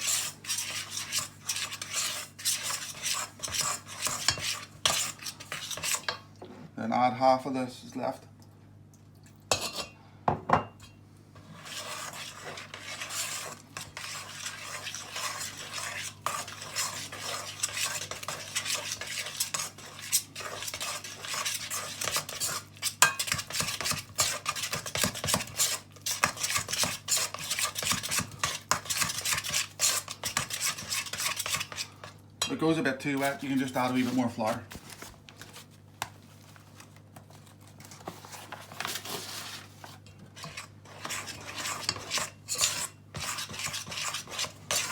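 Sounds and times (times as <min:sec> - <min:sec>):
spoon scraping mixing bowl: 0:00.0 - 0:06.2, 0:09.5 - 0:10.0, 0:11.4 - 0:35.0, 0:38.0 - 0:44.9.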